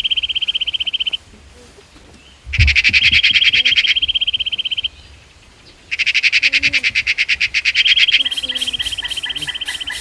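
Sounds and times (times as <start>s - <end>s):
high-pitched pulsed animal trills: 8.1s - 10.0s.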